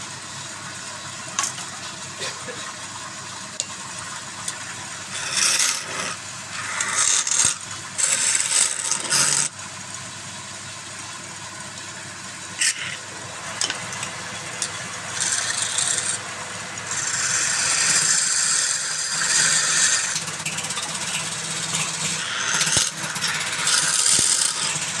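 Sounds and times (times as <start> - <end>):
wood lathe humming: 4.6 - 9.5, 12.6 - 25.0
turning tool scraping wood: 5.1 - 9.5, 12.6 - 13.0, 15.1 - 16.2, 16.9 - 25.0.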